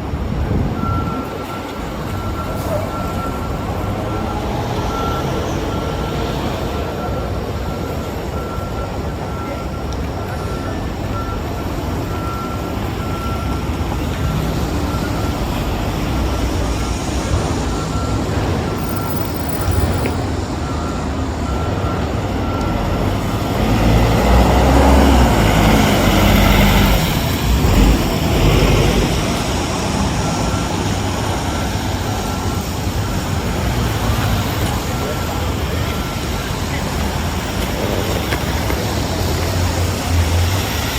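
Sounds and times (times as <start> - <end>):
street traffic: 0.0 - 40.9
faint repeating beep: 0.8 - 27.8
vehicle passing close by: 23.1 - 30.2.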